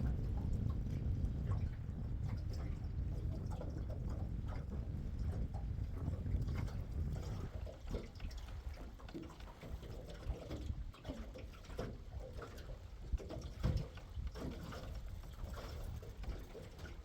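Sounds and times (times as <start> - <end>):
low rumble: 0.0 - 7.5
water splashing and lapping: 0.0 - 17.0.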